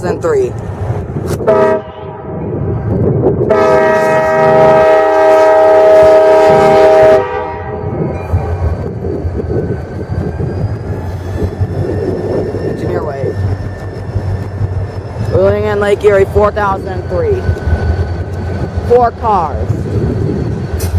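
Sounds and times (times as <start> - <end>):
train rumble: 0.0 - 20.9
locomotive air horn blast: 1.4 - 2.3, 3.5 - 7.8.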